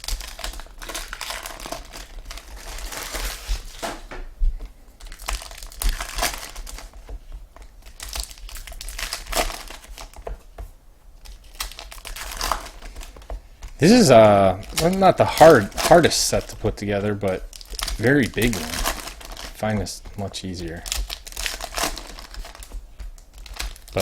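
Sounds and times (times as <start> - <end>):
foil wrappers tearing and crinkling: 0.0 - 4.0, 5.0 - 10.3, 11.2 - 24.0
cards handled: 11.2 - 24.0.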